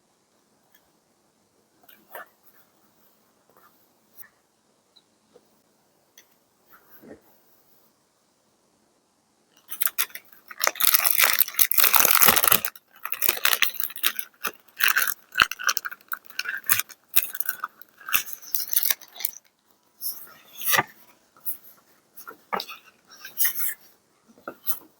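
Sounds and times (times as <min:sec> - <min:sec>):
paper crumpling and crinkling: 0:09.7 - 0:20.9.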